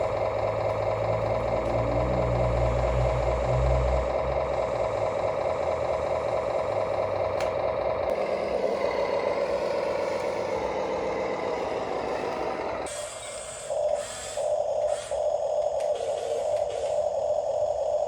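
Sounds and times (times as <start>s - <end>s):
electric motor and gears whine: 0.0s - 18.0s.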